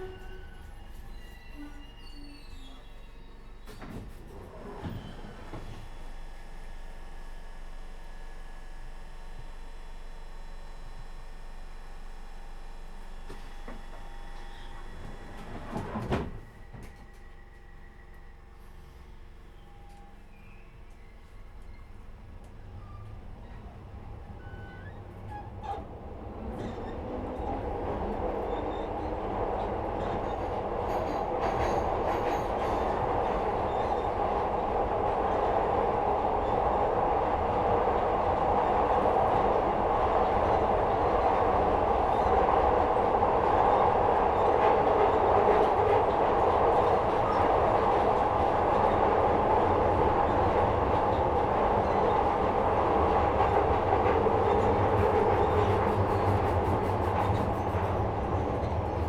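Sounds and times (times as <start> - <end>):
train motor whine: 0.0 - 21.8
train running rumble: 0.0 - 59.0.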